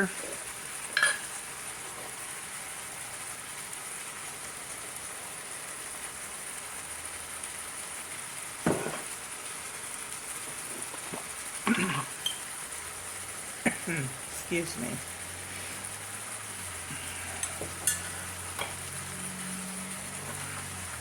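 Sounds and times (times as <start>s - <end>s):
chicken sizzling: 0.0s - 21.0s
knock: 8.6s - 9.0s.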